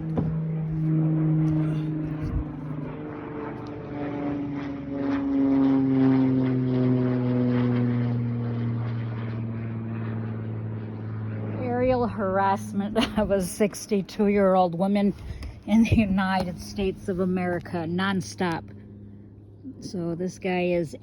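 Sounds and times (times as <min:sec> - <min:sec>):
propeller airplane engine drone: 0:00.0 - 0:21.0.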